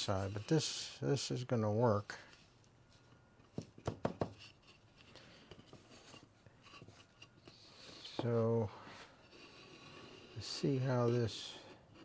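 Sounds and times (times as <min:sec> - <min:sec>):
wooden staves knocking: 0:03.5 - 0:04.4
faint rubbing: 0:04.4 - 0:12.0.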